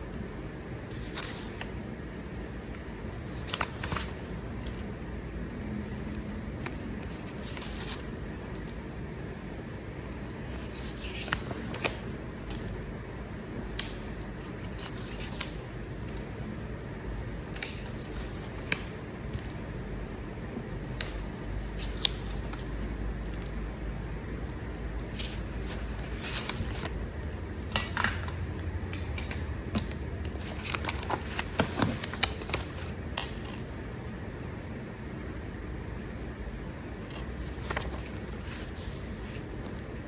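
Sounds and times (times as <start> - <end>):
paper rustling: 0.9 - 1.8, 2.6 - 4.9, 5.8 - 8.8, 9.7 - 12.7, 13.7 - 16.3, 17.3 - 19.6, 20.8 - 23.5, 24.4 - 27.0, 29.3 - 33.7, 36.8 - 40.0.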